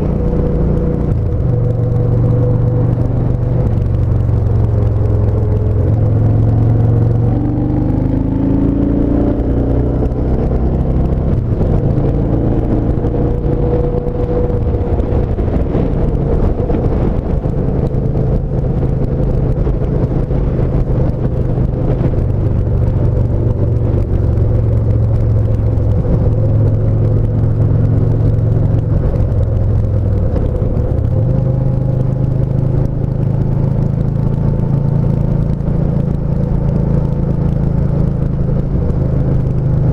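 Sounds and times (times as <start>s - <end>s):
motorcycle engine running: 0.0s - 39.9s.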